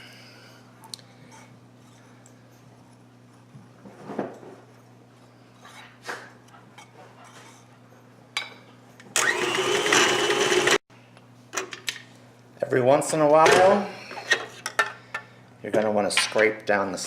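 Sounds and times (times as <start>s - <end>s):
electric mixer running: 9.2s - 10.8s.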